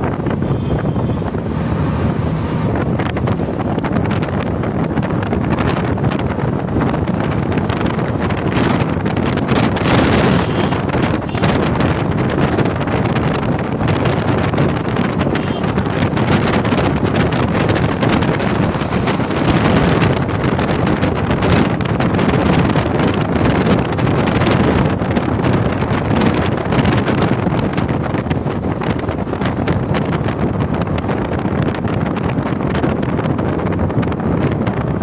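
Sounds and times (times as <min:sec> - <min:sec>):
road and engine noise: 0:00.0 - 0:35.0
wind buffeting microphone: 0:00.0 - 0:35.0.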